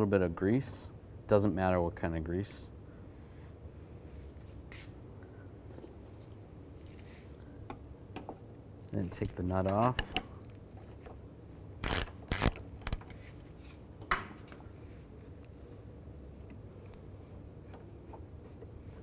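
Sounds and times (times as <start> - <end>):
ratchet clicking: 11.8 - 13.1.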